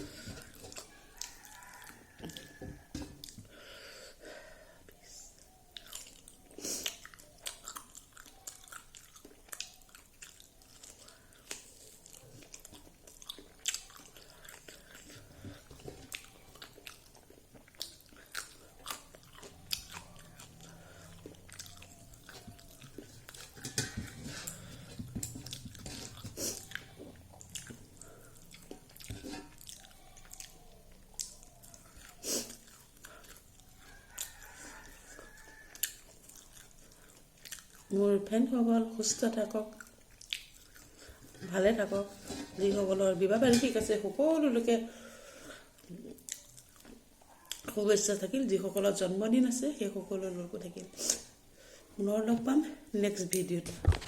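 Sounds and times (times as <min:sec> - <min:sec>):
chewing and crunching food: 0:00.0 - 0:03.7, 0:04.8 - 0:49.0.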